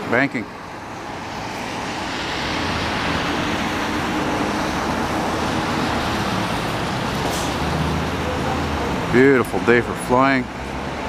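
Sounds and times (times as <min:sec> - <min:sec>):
jet airliner flying overhead: 0:00.2 - 0:08.8.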